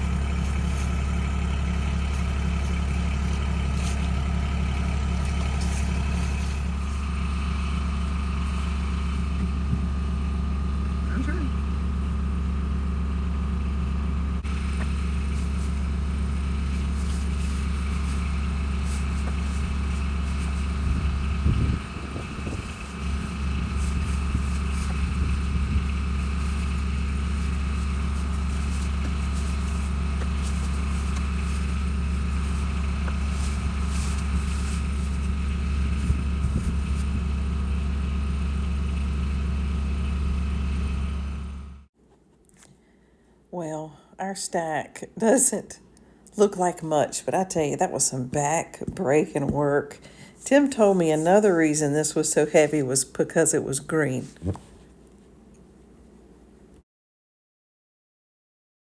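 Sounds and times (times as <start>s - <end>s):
engine running: 0.0s - 41.9s.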